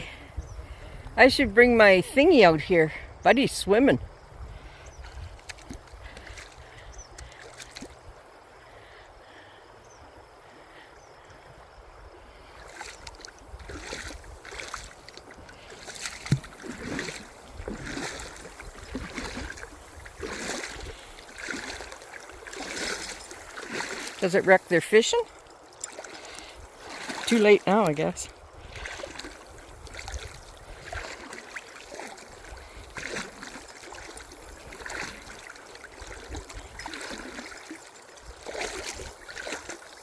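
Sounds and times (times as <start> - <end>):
river water flowing: 0.0 - 40.0
water splashing and sloshing: 0.0 - 40.0.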